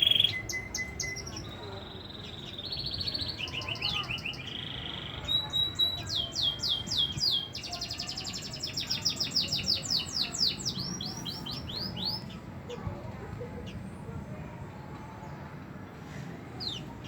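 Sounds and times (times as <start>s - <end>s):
canary singing trills: 0.0s - 12.4s.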